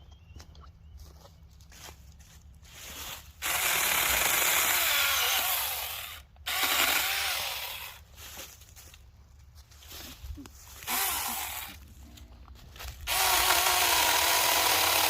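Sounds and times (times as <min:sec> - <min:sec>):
electric chainsaw cutting branches: 0:03.0 - 0:08.1, 0:10.8 - 0:11.8, 0:13.0 - 0:15.0.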